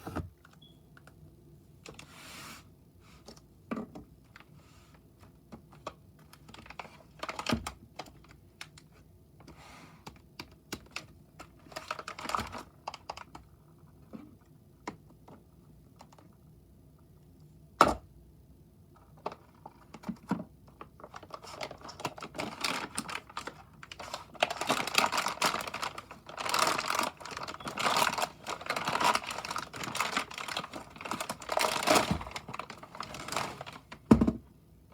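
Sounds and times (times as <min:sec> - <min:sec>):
packaging rustling and crinkling: 0:10.8 - 0:14.4, 0:19.0 - 0:34.3.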